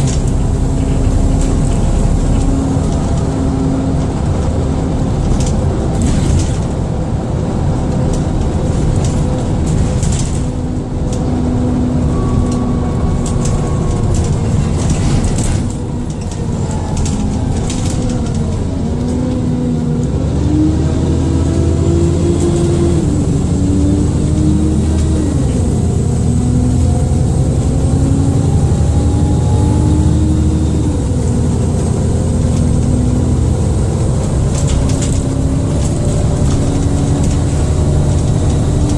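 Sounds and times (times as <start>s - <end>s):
bus engine: 0.0s - 38.9s
high turbo whine: 0.0s - 38.9s
rattles: 12.4s - 19.2s.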